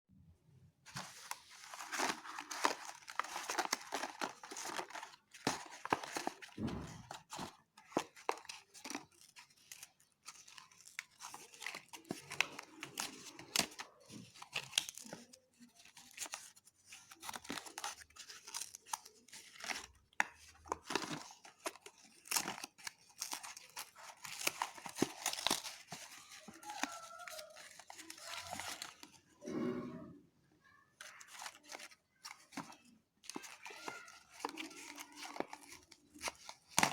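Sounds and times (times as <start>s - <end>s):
wrapper tearing and crinkling: 0.9s - 29.2s, 31.0s - 36.9s.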